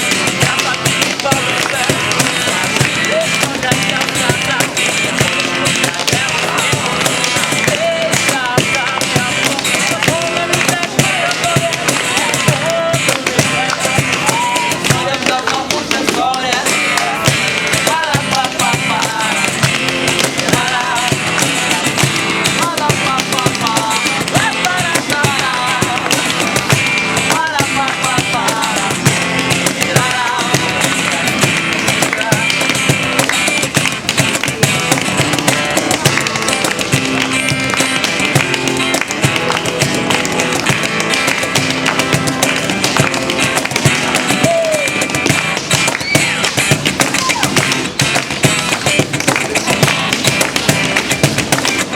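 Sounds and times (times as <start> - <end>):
drums beating: 0.0 - 51.9
rock band playing live: 15.7 - 51.9.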